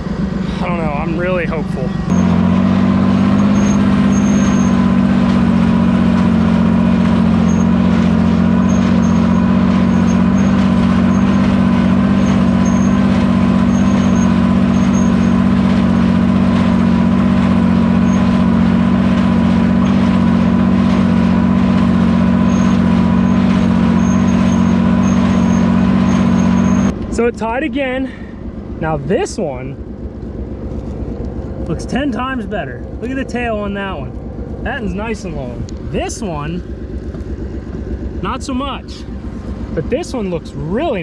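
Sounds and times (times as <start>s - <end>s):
square baler working: 0.0s - 27.0s
tractor engine under load: 0.0s - 41.0s.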